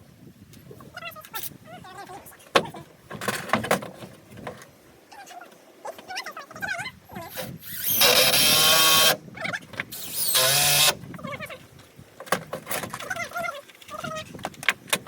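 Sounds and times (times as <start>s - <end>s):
handheld power tool running: 7.6s - 9.2s, 10.0s - 11.0s.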